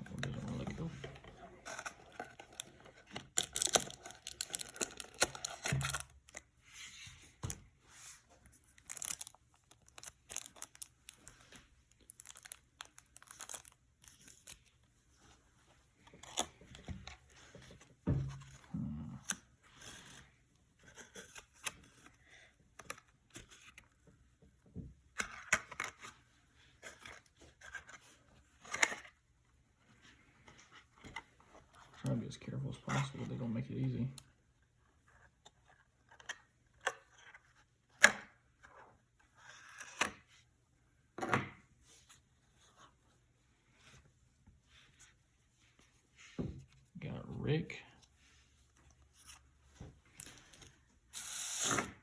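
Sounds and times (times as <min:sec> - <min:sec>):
card packaging tearing and crinkling: 0:02.3 - 0:06.4, 0:08.8 - 0:11.2, 0:12.0 - 0:14.6, 0:51.2 - 0:52.0.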